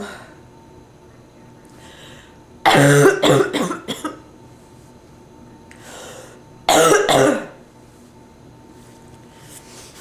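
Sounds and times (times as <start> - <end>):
woman breathing in: 1.8 - 2.4, 5.7 - 6.4
woman harsh coughing: 2.6 - 4.2, 6.7 - 7.6.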